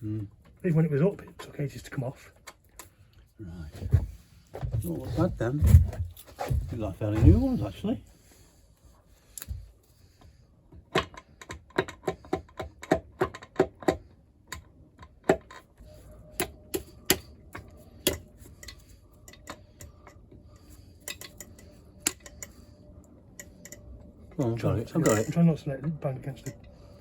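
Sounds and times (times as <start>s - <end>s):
hand tools tapping engine metal: 23.4s - 25.5s.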